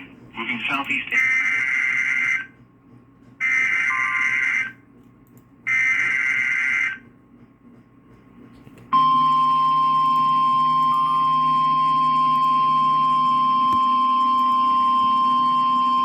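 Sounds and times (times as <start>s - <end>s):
steady warning alarm tone: 1.0s - 2.6s, 3.4s - 4.8s, 5.6s - 7.1s, 8.9s - 16.0s
harsh digital screeching bursts: 3.4s - 4.7s.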